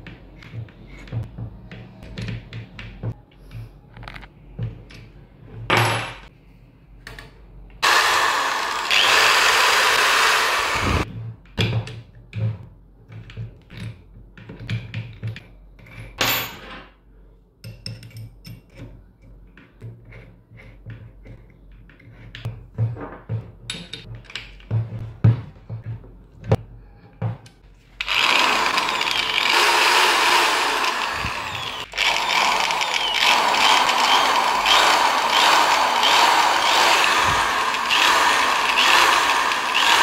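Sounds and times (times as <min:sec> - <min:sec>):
electric drill running: 0:07.8 - 0:11.1, 0:28.0 - 0:40.0
clicks and knocks handling drill: 0:28.0 - 0:40.0.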